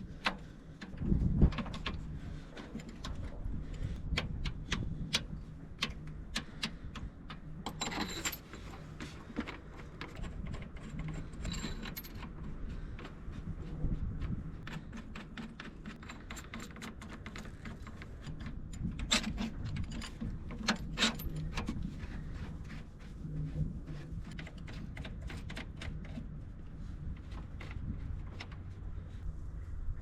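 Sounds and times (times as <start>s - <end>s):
metallic clicks and clanks: 3.9s - 13.2s, 14.2s - 21.8s.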